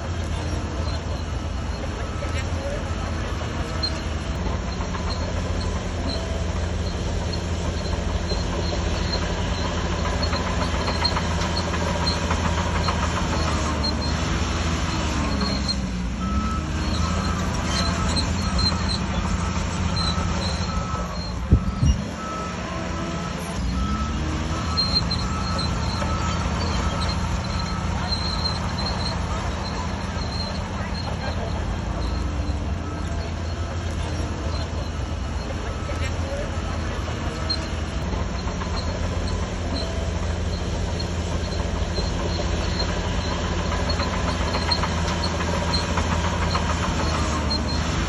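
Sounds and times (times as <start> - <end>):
bulldozer diesel engine: 0.0 - 48.0
faint repeated beep: 14.9 - 37.8.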